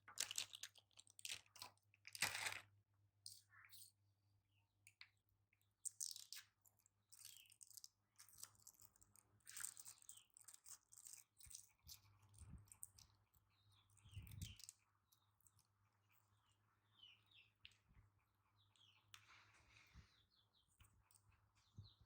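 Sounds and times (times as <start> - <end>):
crinkling and crunching: 0.0 - 2.6.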